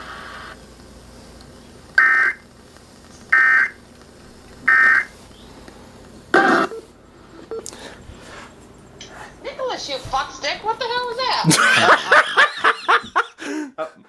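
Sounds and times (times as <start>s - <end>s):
buzzy digital data bursts: 0.0s - 1.3s, 2.0s - 5.5s.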